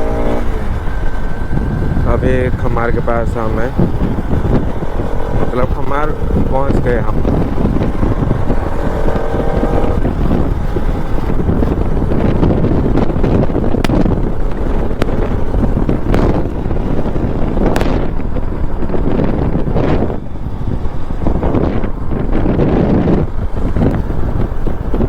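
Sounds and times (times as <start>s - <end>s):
motorcycle engine rumble: 0.0s - 25.0s
wind buffeting microphone: 0.0s - 25.0s.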